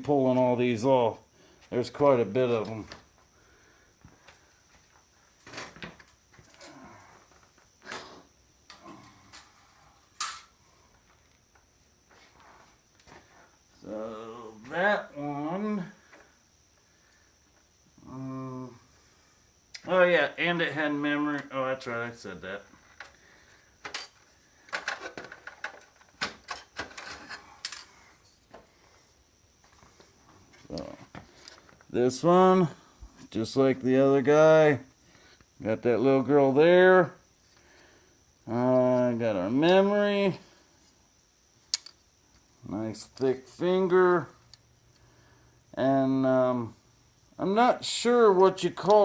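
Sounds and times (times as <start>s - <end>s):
electronic parts clicking and clattering: 23.8s - 27.9s, 41.7s - 42.0s
clicks of electronic parts handled: 41.7s - 42.0s.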